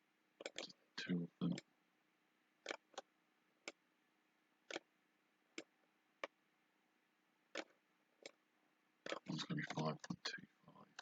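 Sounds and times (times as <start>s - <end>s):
computer mouse clicks: 0.4s - 0.7s, 2.6s - 3.8s, 4.7s - 4.9s, 7.5s - 8.4s, 9.0s - 10.2s.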